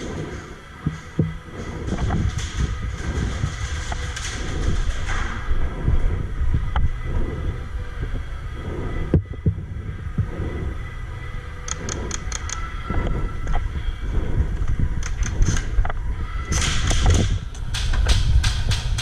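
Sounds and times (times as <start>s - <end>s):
wind rumble on microphone: 0.0s - 19.0s
sharp clicks: 11.6s - 12.7s, 14.6s - 19.0s.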